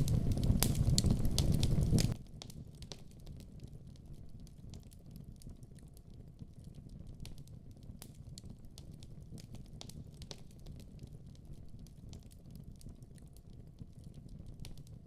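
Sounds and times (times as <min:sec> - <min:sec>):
low steady rumble: 0:00.0 - 0:02.2
firewood crackling and popping: 0:00.0 - 0:15.0.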